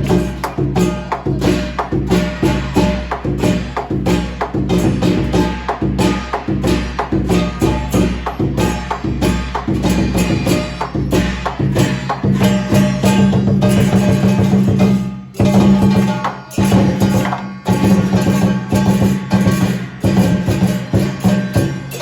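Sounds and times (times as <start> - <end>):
big drum beating: 0.0 - 22.0
cymbals clashing: 0.0 - 22.0
gong: 0.0 - 22.0.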